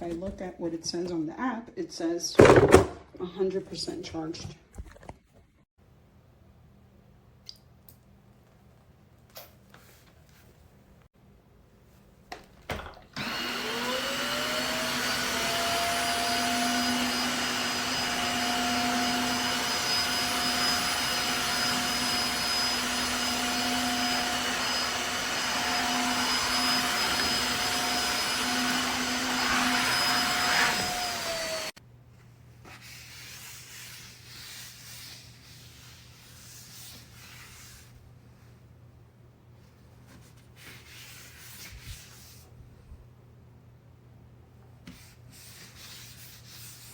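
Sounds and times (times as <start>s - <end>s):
vacuum motor whining: 13.2s - 31.8s.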